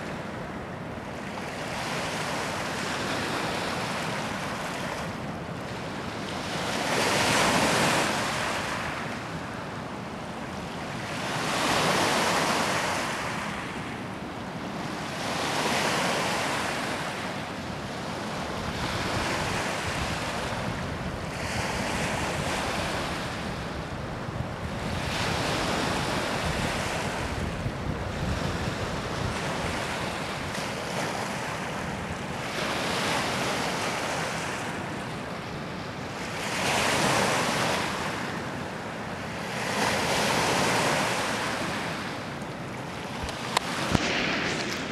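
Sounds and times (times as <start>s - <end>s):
waves washing in: 0.0s - 44.9s
wind buffeting microphone: 18.6s - 30.5s, 43.1s - 44.9s.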